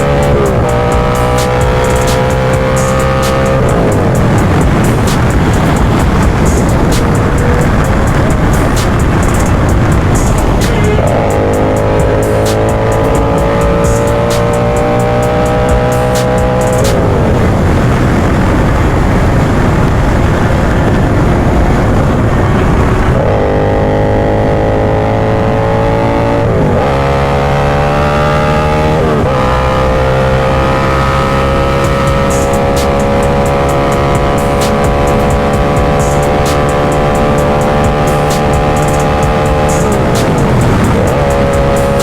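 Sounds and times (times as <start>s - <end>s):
motorcycle engine accelerating: 0.0s - 42.0s
wind rush: 0.0s - 42.0s.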